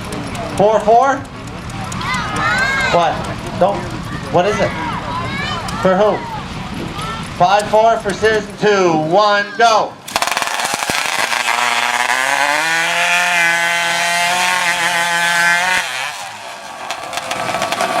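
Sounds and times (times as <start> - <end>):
chainsaw cutting through log: 10.1 - 18.0.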